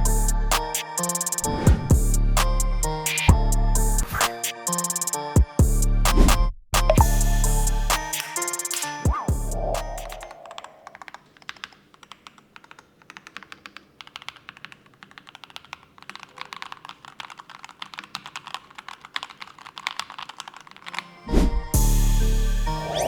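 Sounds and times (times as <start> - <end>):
mechanical keyboard typing: 10.3 - 21.2.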